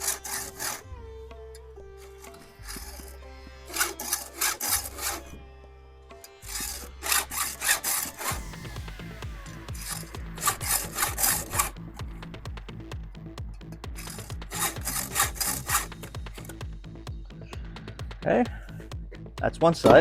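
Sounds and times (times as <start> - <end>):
file scraping chainsaw chain: 0.0 - 0.9, 1.5 - 5.4, 6.1 - 8.8, 9.5 - 12.1, 13.8 - 16.7
background music with a beat: 0.0 - 20.0.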